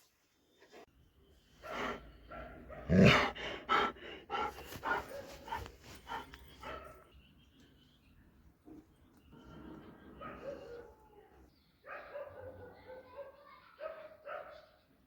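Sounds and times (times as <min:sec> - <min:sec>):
dog barking and whining: 0:01.7 - 0:06.9.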